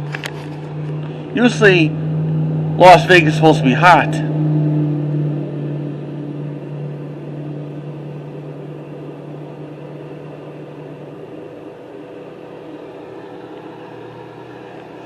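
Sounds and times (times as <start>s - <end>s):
engine humming: 0.0s - 15.0s.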